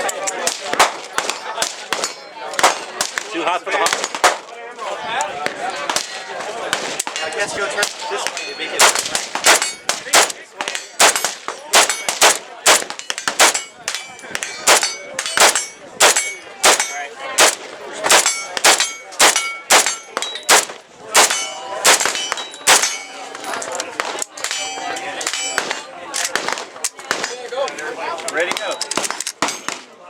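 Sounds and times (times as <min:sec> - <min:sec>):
metallic impacts on steel targets: 0:07.9 - 0:23.3.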